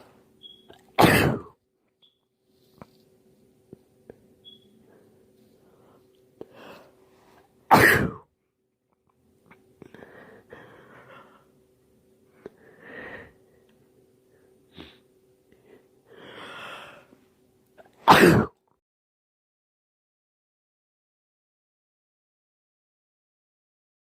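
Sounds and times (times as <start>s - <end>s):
man sneezing: 1.0s - 1.5s, 7.7s - 8.3s, 18.0s - 18.6s.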